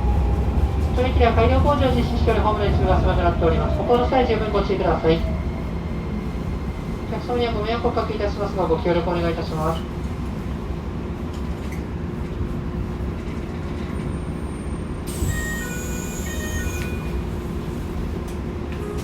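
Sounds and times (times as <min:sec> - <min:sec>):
train wheels rumbling on rail: 0:00.0 - 0:19.0
falling high whistle: 0:15.1 - 0:17.2.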